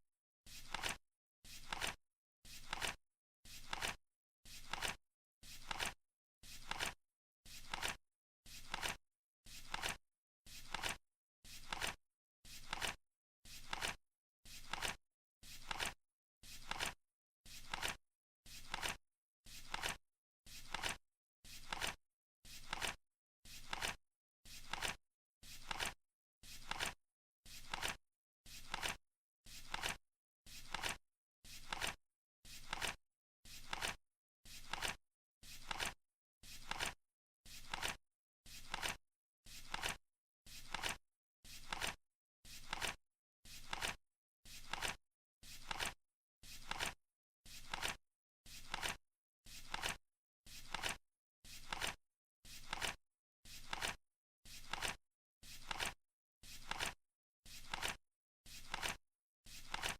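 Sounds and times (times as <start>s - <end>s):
flip clock card flipping: 0.6s - 1.0s, 1.6s - 2.0s, 2.6s - 3.0s, 3.6s - 4.0s, 4.6s - 5.0s, 5.6s - 6.0s, 6.6s - 7.0s, 7.6s - 8.0s, 8.6s - 9.0s, 9.7s - 10.0s, 10.7s - 11.0s, 11.6s - 12.0s, 12.6s - 13.0s, 13.6s - 14.0s, 15.6s - 16.0s, 16.6s - 17.0s, 17.6s - 18.0s, 18.6s - 19.0s, 19.7s - 20.0s, 20.7s - 21.0s, 21.6s - 22.0s, 22.6s - 23.0s, 23.6s - 24.0s, 24.6s - 25.0s, 25.6s - 26.0s, 26.6s - 27.0s, 27.6s - 28.0s, 28.7s - 29.0s, 29.7s - 30.0s, 30.7s - 31.0s, 31.6s - 32.0s, 32.6s - 33.0s, 33.6s - 34.0s, 34.6s - 35.0s, 35.6s - 36.0s, 36.6s - 37.0s, 37.6s - 38.0s, 38.6s - 39.0s, 39.7s - 40.0s, 40.7s - 41.0s, 41.6s - 42.0s, 42.6s - 43.0s, 43.6s - 44.0s, 44.6s - 45.0s, 45.6s - 46.0s, 46.6s - 47.0s, 47.6s - 48.0s, 48.6s - 49.0s, 49.7s - 50.0s, 50.7s - 51.0s, 51.6s - 52.0s, 52.6s - 53.0s, 53.6s - 54.0s, 54.7s - 55.0s, 55.6s - 55.9s, 56.6s - 56.9s, 57.6s - 58.0s, 58.6s - 59.0s, 59.7s - 59.9s.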